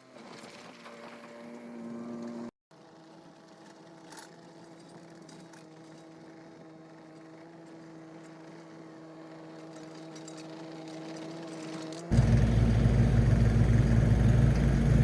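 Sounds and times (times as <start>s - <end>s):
excavator engine humming: 12.1s - 15.0s.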